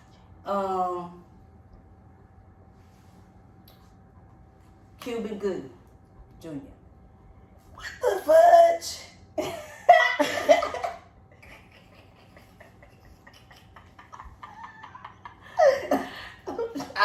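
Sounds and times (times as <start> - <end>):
women laughing: 9.4 - 17.0.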